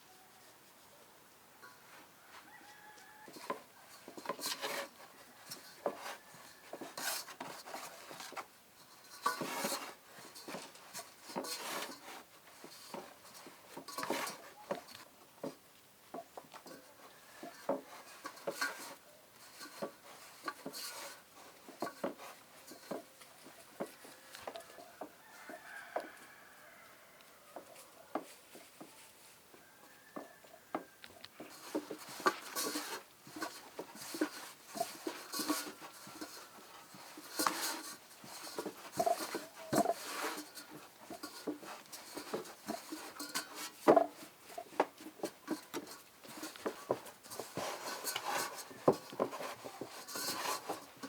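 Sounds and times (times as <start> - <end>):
food preparation knocks and clatters: 16.2 - 25.2.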